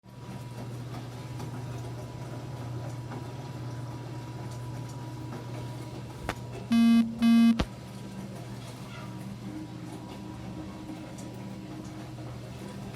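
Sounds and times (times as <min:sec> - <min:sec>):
washing machine humming: 0:00.0 - 0:12.9
loud buzzer beep: 0:06.7 - 0:07.7.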